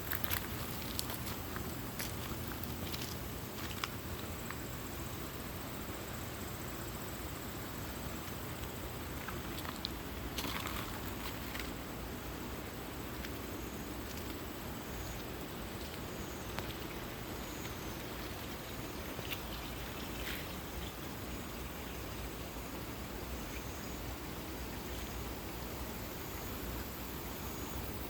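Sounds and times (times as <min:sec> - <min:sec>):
stream flowing over rocks: 0:07.5 - 0:27.5.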